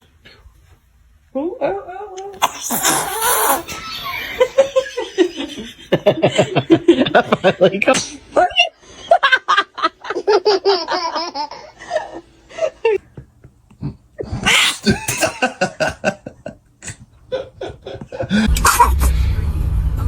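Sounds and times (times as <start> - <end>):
laughter in short bursts: 16.8 - 19.1
low rumble: 18.5 - 20.0.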